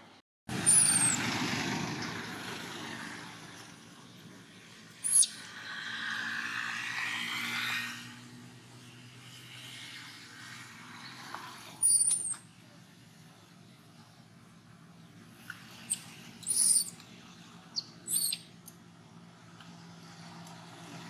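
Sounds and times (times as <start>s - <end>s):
monkey squeaking: 0.6s - 1.2s, 5.0s - 5.4s, 11.8s - 12.4s, 15.9s - 17.0s, 17.8s - 18.5s.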